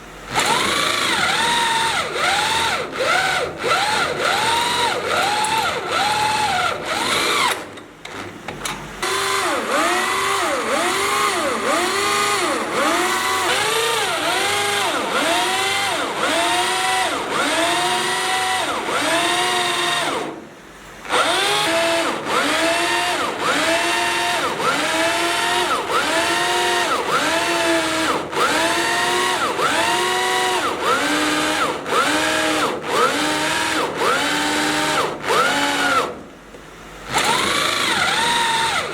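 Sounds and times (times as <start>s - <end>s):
power drill boring into steel: 0.3s - 7.7s, 9.0s - 20.4s, 21.1s - 36.2s, 37.1s - 38.9s.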